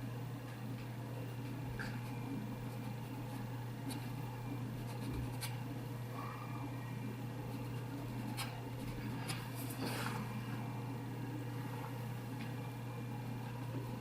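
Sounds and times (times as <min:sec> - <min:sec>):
steady low hum: 0:00.0 - 0:14.0
paintbrush scratching on canvas: 0:04.8 - 0:05.6.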